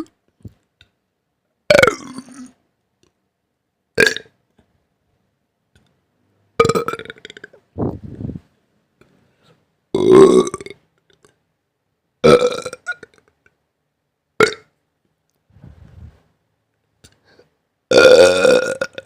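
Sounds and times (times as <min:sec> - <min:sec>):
burps: 0:01.7 - 0:02.6, 0:04.0 - 0:04.4, 0:06.6 - 0:08.0, 0:09.9 - 0:11.2, 0:12.2 - 0:13.3, 0:14.4 - 0:14.8, 0:17.9 - 0:19.0.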